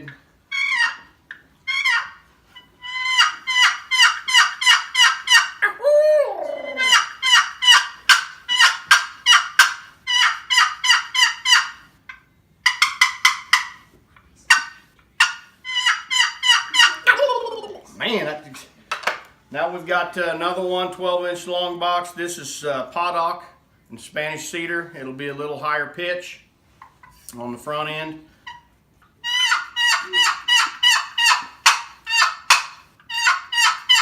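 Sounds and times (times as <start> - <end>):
turkey box call yelps: 0.5 - 13.9, 14.5 - 17.9, 28.4 - 34.0.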